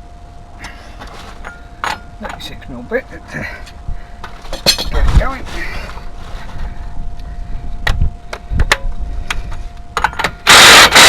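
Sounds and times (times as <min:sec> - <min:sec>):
power tool running: 0:10.2 - 0:11.0.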